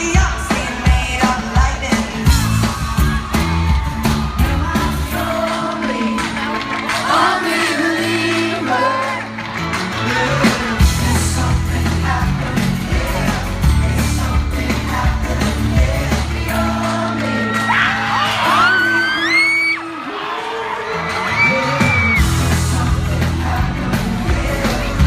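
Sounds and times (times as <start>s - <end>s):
live pop band playing: 0.0s - 25.0s
audience whooping: 2.2s - 7.1s, 17.1s - 22.6s
male group vocals singing: 4.3s - 19.3s, 21.4s - 25.0s.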